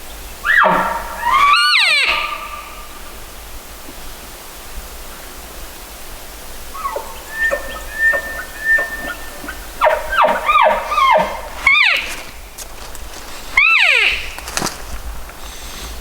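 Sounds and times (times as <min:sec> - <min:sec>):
elk whistling and squealing: 0:00.4 - 0:03.2, 0:06.6 - 0:12.5, 0:13.3 - 0:14.5.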